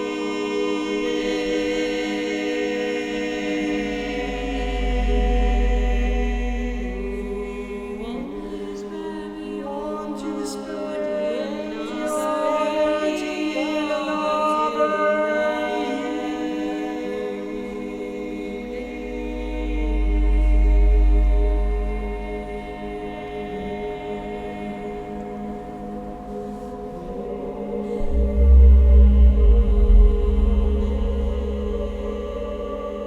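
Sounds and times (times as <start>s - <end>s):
voices singing in chorus: 0.0s - 33.0s
deep low rumble: 19.4s - 22.7s, 27.9s - 33.0s.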